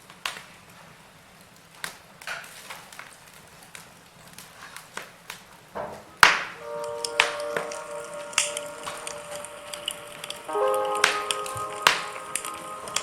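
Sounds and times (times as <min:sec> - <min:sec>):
logs crackling in fire: 0:06.6 - 0:13.0
low fire hiss: 0:06.6 - 0:13.0.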